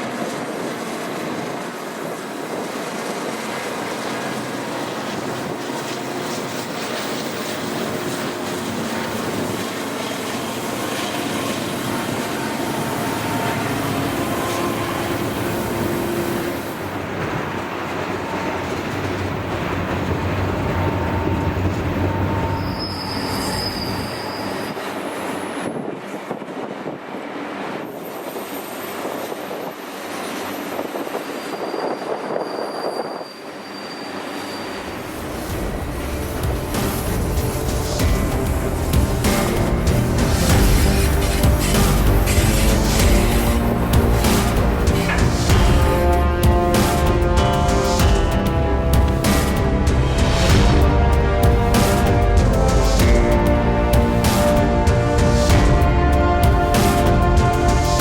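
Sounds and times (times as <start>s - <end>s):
train rumbling on rails: 0.0s - 58.0s
train wheels squealing: 20.7s - 25.9s, 27.8s - 35.5s.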